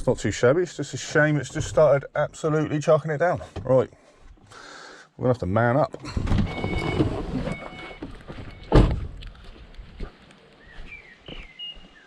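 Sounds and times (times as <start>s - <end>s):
heavy thump: 8.3s - 9.2s
birds chirping: 10.1s - 12.0s.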